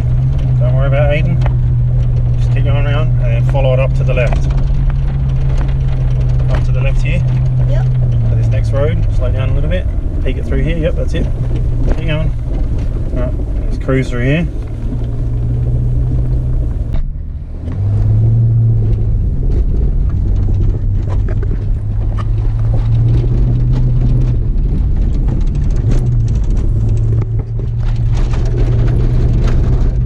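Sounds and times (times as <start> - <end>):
small clicks and knocks: 0.0 - 17.9
car engine running: 0.0 - 30.0.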